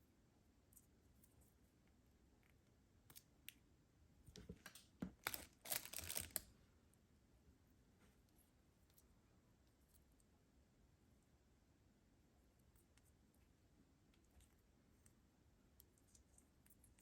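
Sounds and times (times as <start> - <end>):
packaging crinkling and tearing: 4.6 - 6.5.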